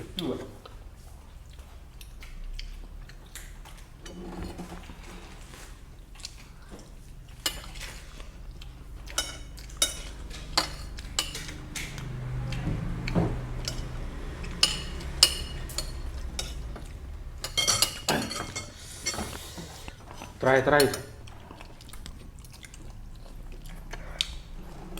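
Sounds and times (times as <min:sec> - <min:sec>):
cutlery clinking on a plate: 0:09.1 - 0:12.2, 0:13.2 - 0:19.4.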